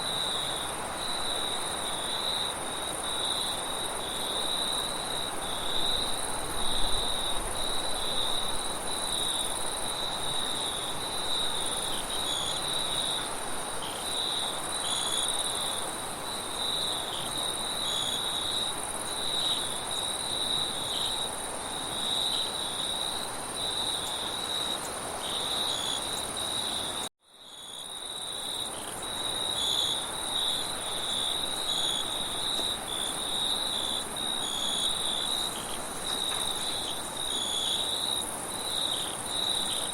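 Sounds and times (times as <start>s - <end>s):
crickets chirping: 0.0s - 39.9s
high insect trill: 0.1s - 39.9s.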